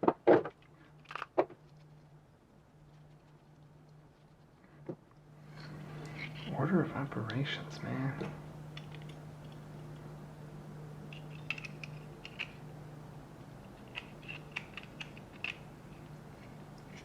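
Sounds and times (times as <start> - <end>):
steady low hum: 0.0 - 17.0
small parts clicking and tapping: 0.5 - 2.1, 8.7 - 10.1, 11.1 - 12.7, 13.6 - 17.0.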